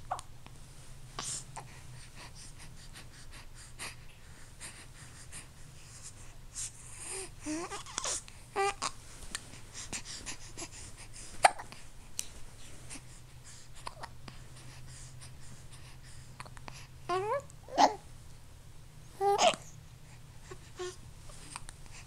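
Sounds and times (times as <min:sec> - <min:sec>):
baby breathing softly: 0:00.4 - 0:17.2, 0:19.2 - 0:22.0
baby whimpering: 0:07.1 - 0:09.0, 0:17.1 - 0:18.0, 0:19.2 - 0:19.8
baby hiccuping: 0:11.4 - 0:11.6, 0:19.2 - 0:19.7.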